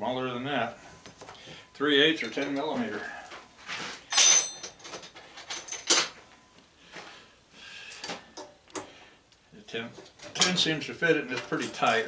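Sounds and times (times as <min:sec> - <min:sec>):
wrenches clinking against metal: 0:02.2 - 0:02.9, 0:04.1 - 0:06.2, 0:09.9 - 0:10.7, 0:11.3 - 0:12.0
metallic clank with ring: 0:04.1 - 0:04.8.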